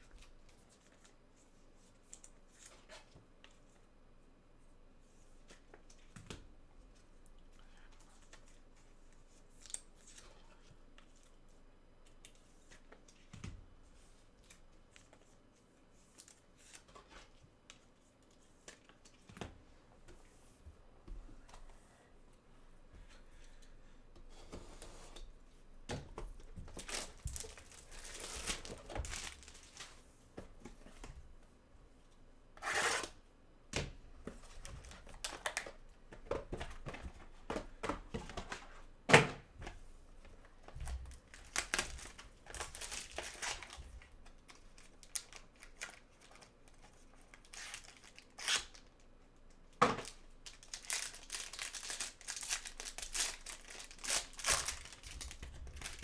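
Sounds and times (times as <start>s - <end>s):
wrappers tearing and crinkling: 26.7s - 30.0s, 41.1s - 48.9s, 50.0s - 56.0s.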